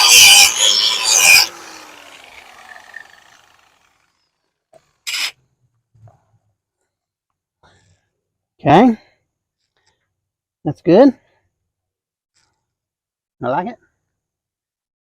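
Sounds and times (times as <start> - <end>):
angle grinder grinding metal: 0.0 - 4.2, 5.0 - 5.4
grinder disc winding down: 0.0 - 4.3
brief scrape: 5.1 - 5.4.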